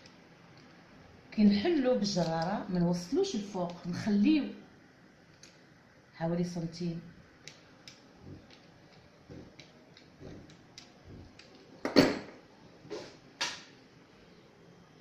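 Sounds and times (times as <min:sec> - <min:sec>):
light clicks and taps: 0:07.4 - 0:11.7
pastry wheel cutting dough: 0:08.0 - 0:11.6.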